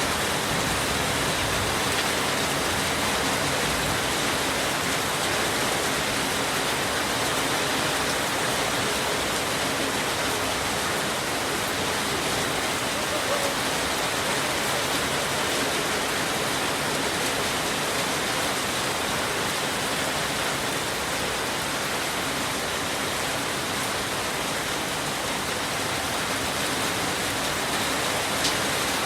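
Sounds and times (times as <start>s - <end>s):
steady rain falling: 0.0s - 29.0s.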